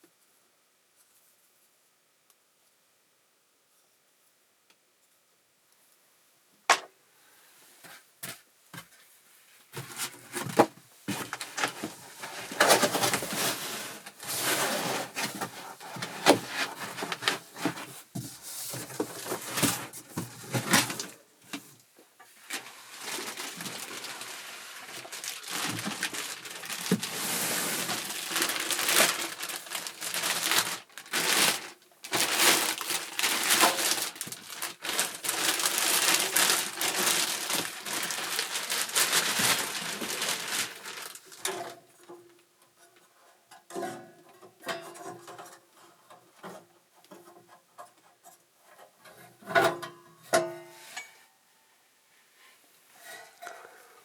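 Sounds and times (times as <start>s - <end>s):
packaging crinkling and rustling: 9.8s - 21.7s, 22.3s - 42.0s.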